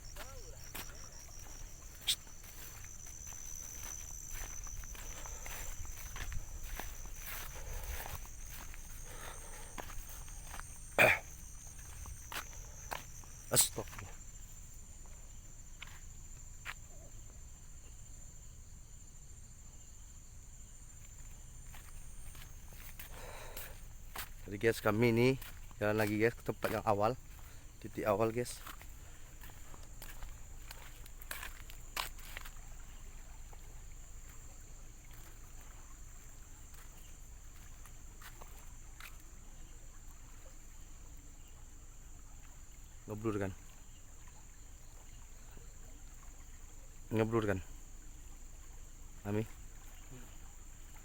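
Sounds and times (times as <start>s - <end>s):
high-pitched insect drone: 0.0s - 14.7s
night insects chirring: 0.0s - 51.0s.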